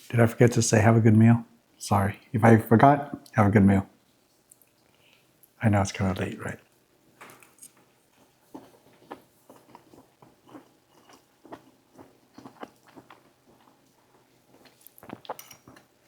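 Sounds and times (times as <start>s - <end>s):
chewing dry food: 6.6s - 16.0s.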